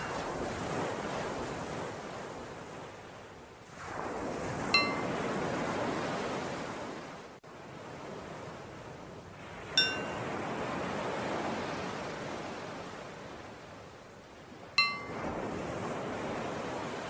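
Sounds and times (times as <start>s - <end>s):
ocean waves washing in: 0.0s - 17.0s
bell ringing: 4.8s - 5.1s, 9.8s - 10.2s, 14.8s - 15.2s.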